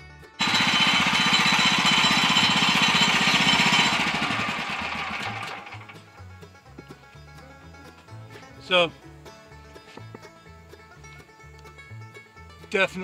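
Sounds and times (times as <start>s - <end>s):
gas engine running hard: 0.4s - 6.0s.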